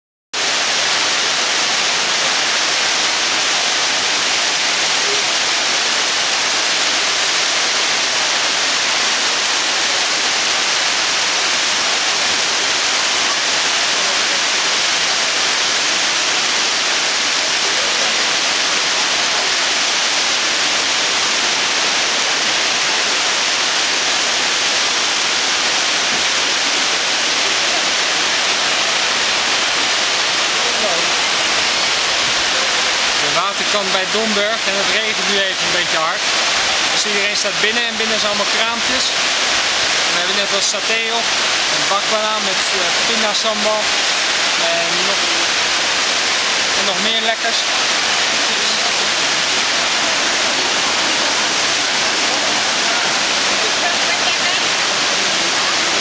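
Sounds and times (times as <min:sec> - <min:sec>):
heavy rain falling: 0:00.4 - 0:56.0.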